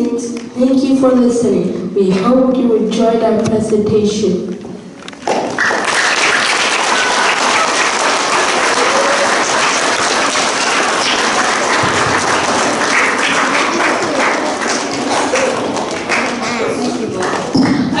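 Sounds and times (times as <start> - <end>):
audience applauding: 5.2 - 17.5.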